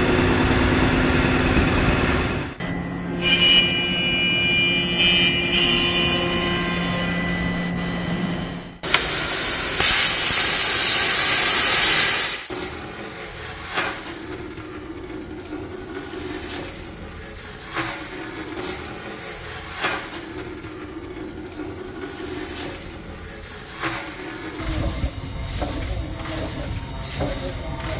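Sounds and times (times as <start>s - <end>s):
hiss of escaping pressure: 8.8s - 12.5s
machine hum: 8.8s - 12.5s
machine with high thin whine: 8.8s - 12.5s.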